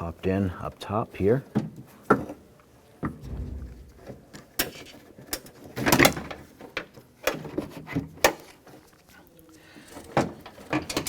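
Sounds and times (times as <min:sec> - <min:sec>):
dull thump: 0:03.2 - 0:04.5
loud clatter: 0:03.2 - 0:04.9.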